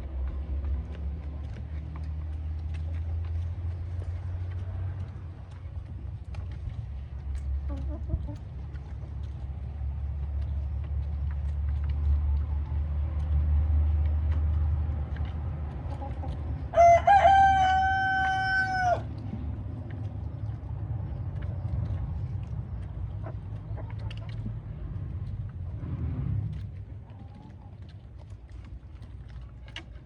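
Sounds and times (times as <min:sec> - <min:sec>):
steady low rumble: 0:00.0 - 0:30.0
rooster crowing: 0:16.7 - 0:19.1.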